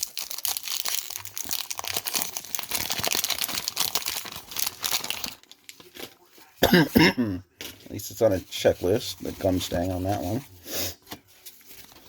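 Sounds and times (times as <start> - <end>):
wrapper tearing: 0.0 - 6.2
wax paper wrapper crinkling: 0.0 - 6.6, 7.6 - 12.0.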